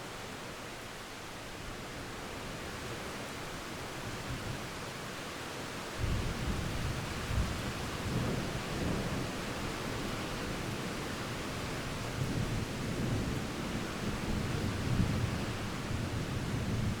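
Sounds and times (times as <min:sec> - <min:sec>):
rain hiss: 0:00.0 - 0:17.0.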